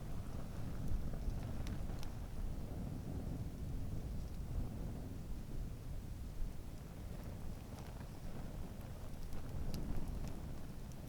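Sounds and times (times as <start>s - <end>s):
campfire burning: 0.0s - 11.0s.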